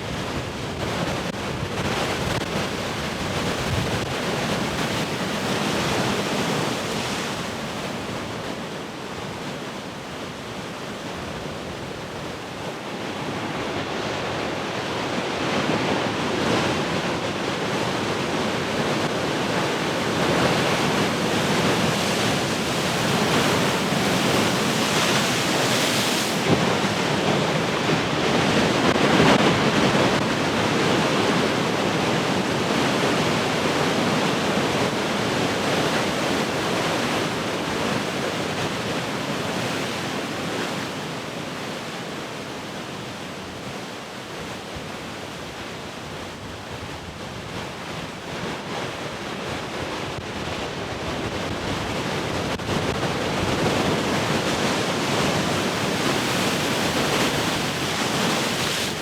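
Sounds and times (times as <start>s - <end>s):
wind on microphone: 11.2s - 41.2s
ocean waves crashing: 12.8s - 43.8s, 49.6s - 59.0s.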